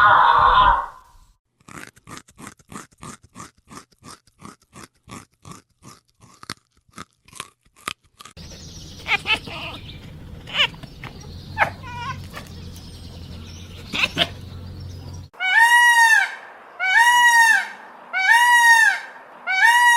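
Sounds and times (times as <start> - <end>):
animal chewing crunchily: 1.5 - 14.8.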